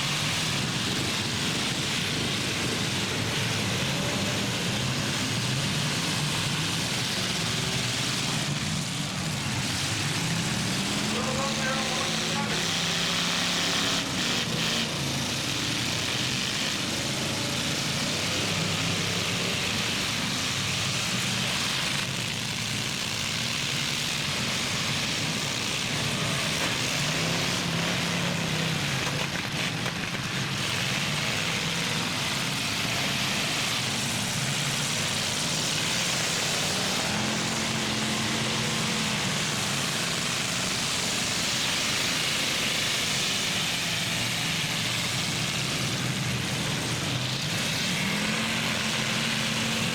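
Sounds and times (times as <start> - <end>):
truck engines revving: 0.0 - 49.9
noisy din: 8.8 - 15.4.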